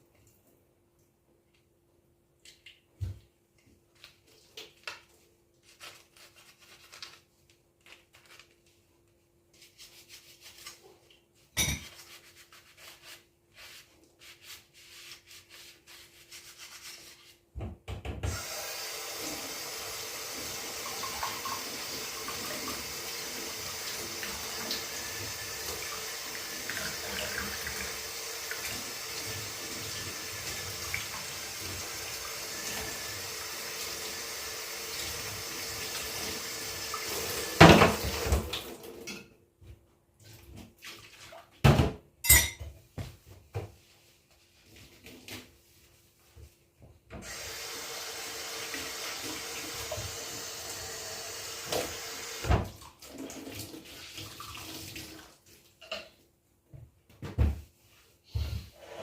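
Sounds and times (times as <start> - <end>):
tap water running into sink: 18.3 - 39.2, 47.2 - 55.4.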